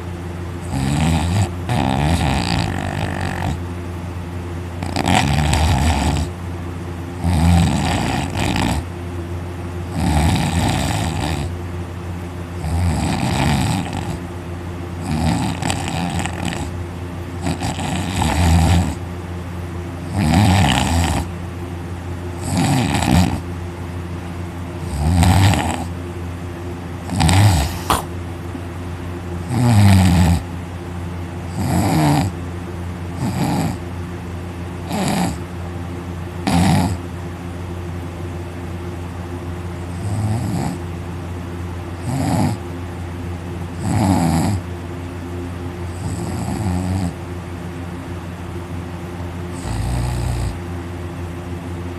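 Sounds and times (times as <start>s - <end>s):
man snoring loudly: 0.6s - 3.6s, 4.8s - 6.3s, 7.2s - 8.9s, 9.9s - 11.5s, 12.6s - 14.2s, 15.0s - 16.7s, 17.4s - 19.0s, 20.1s - 21.3s, 22.4s - 23.4s, 24.8s - 25.9s, 27.1s - 28.1s, 29.5s - 30.5s, 31.5s - 32.3s, 33.2s - 33.8s, 34.9s - 35.4s, 36.4s - 37.0s, 40.0s - 40.8s, 42.0s - 42.6s, 43.8s - 44.6s, 46.0s - 47.2s, 49.6s - 50.6s.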